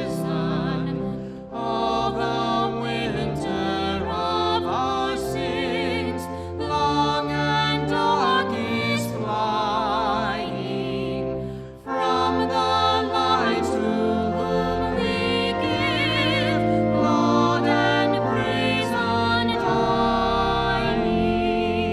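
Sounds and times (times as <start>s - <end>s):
sustained accompaniment: 0.0s - 21.9s
person singing with vibrato: 11.9s - 21.9s.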